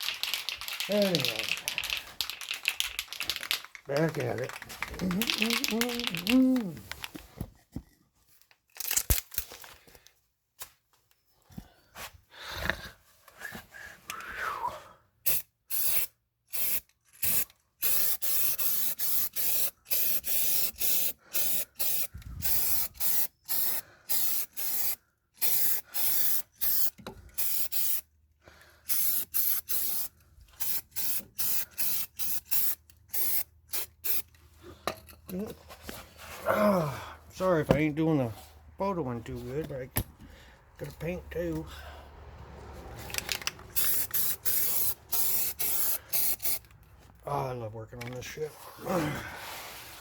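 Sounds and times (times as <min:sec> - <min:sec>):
handling sounds: 0:00.0 - 0:10.0
spray can hissing: 0:05.1 - 0:06.4, 0:15.3 - 0:28.1, 0:28.9 - 0:34.3, 0:43.7 - 0:46.7.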